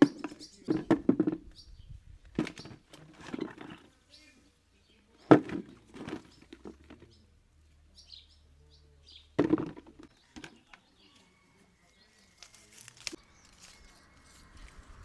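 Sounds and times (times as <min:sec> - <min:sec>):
small bird chirping: 0:00.0 - 0:00.7, 0:01.4 - 0:02.8, 0:13.2 - 0:15.0.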